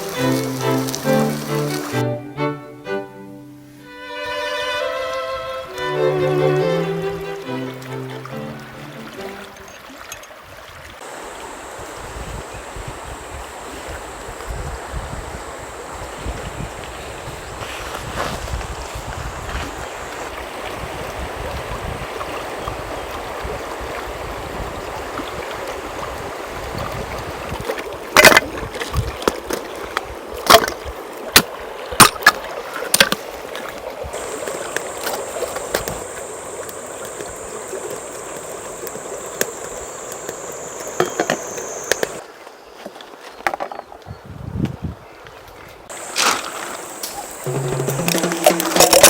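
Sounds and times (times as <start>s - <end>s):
steak sizzling: 0.0s - 2.0s, 34.2s - 42.2s
fire crackling pops: 34.2s - 42.2s.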